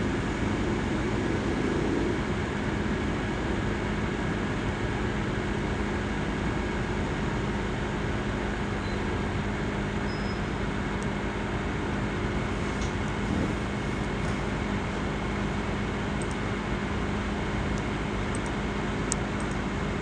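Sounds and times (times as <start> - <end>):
laptop fan whirring: 12.8 - 14.6.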